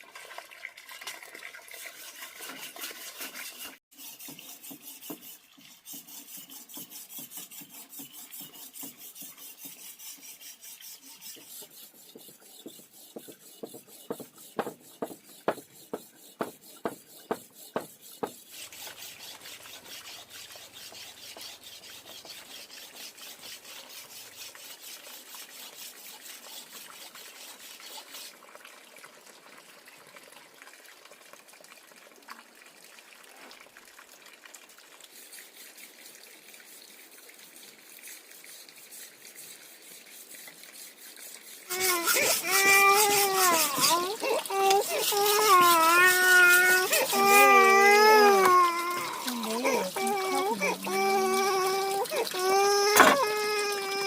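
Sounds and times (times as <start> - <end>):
fast rubbing strokes: 2.0 - 28.2, 40.7 - 52.8
sharp knocks: 12.2 - 18.4.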